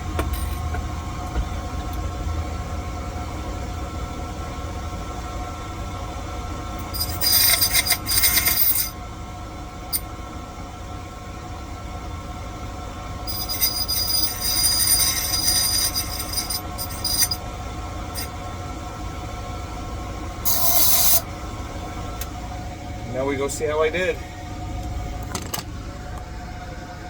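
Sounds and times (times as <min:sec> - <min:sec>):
cutter grinding metal key: 0:06.8 - 0:09.0, 0:13.3 - 0:17.4, 0:20.5 - 0:21.2.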